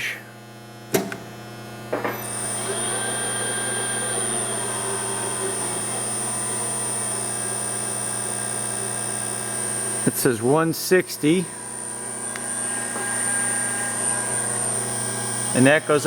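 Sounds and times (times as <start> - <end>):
drill press humming and whining: 0.0 - 16.0
drill press switch click: 12.2 - 13.3.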